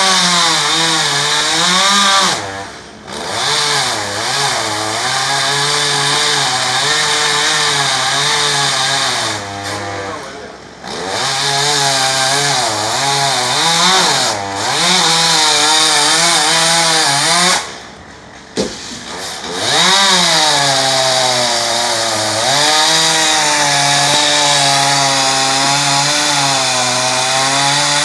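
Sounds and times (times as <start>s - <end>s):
chainsaw cutting wood: 0.0s - 28.0s
single knock: 18.6s - 18.8s.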